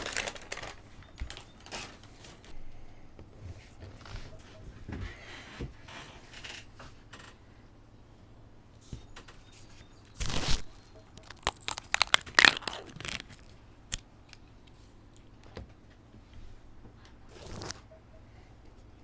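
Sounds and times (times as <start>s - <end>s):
paper packaging crinkling and tearing: 0.0s - 2.5s, 10.1s - 13.6s, 17.3s - 17.8s.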